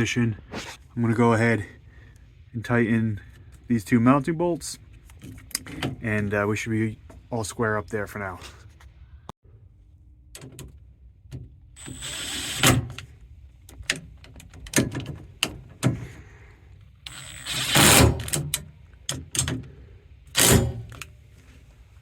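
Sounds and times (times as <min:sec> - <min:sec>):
metallic clicks and knocks: 0:13.7 - 0:16.0
rapid ratchet clicking: 0:17.1 - 0:18.5.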